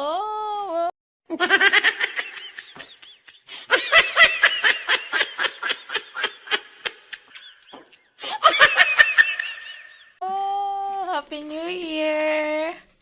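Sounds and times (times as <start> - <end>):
high-pitched laughter: 1.3 - 10.2.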